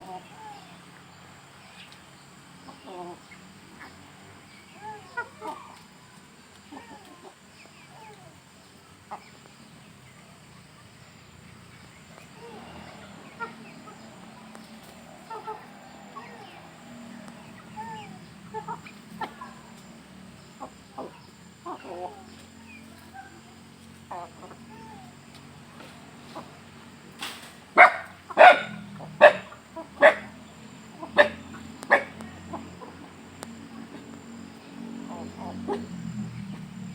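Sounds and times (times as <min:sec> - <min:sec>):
chickens clucking softly: 0:00.0 - 0:36.9
low steady background noise: 0:00.0 - 0:36.9
dog barking: 0:27.8 - 0:30.4, 0:31.1 - 0:32.2.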